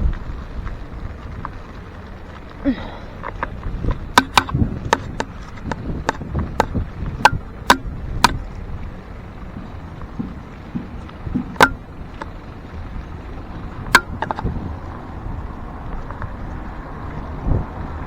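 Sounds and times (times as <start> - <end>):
wind rumble on microphone: 0.0 - 18.0
sharp hard clacks: 4.2 - 8.4, 11.4 - 11.8, 13.9 - 14.4.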